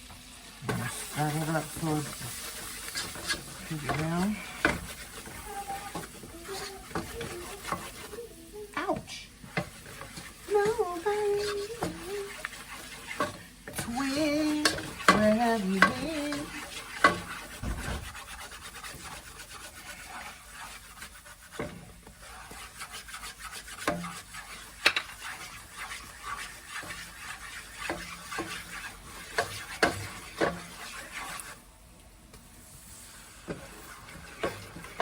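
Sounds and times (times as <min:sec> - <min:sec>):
spoon stirring and scraping pot: 0:00.4 - 0:31.7, 0:32.3 - 0:35.0
spoon knocking against pan: 0:03.0 - 0:08.1, 0:11.4 - 0:18.3.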